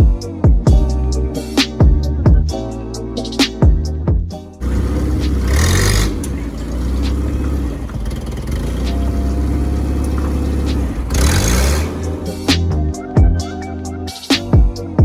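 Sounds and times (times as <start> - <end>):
vehicle engine and road rumble: 4.6 - 12.9.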